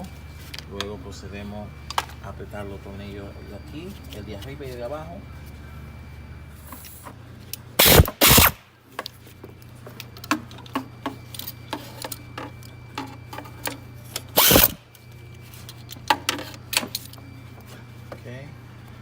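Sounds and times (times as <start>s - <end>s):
power tool bursts: 7.8s - 8.6s, 14.2s - 14.8s
ratchet-like clicks: 7.8s - 8.6s, 14.4s - 14.8s.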